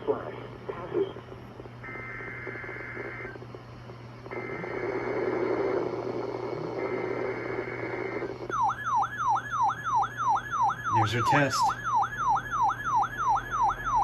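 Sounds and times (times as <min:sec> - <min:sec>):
low hum and hiss: 0:00.0 - 0:14.0
shrill two-tone data bursts: 0:08.5 - 0:14.0.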